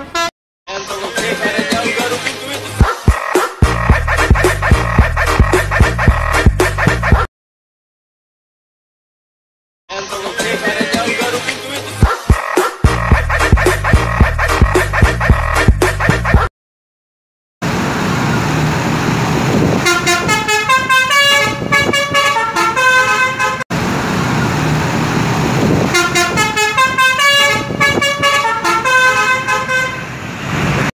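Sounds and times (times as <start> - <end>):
multi-tone musical bus horn: 0.0 - 0.3, 19.7 - 23.6, 25.7 - 30.2
engine and traffic rumble: 17.6 - 30.9.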